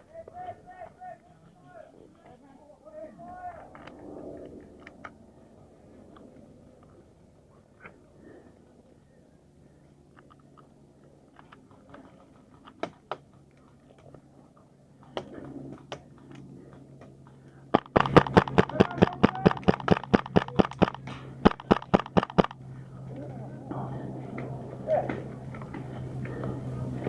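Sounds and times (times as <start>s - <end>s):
airsoft gun firing full auto: 17.7s - 22.6s.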